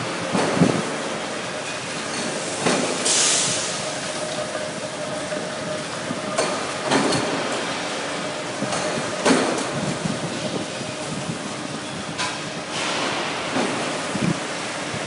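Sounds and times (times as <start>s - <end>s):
factory machinery din: 0.0s - 15.0s
metal clanks: 1.6s - 14.1s
compressed-air hiss: 2.4s - 4.0s.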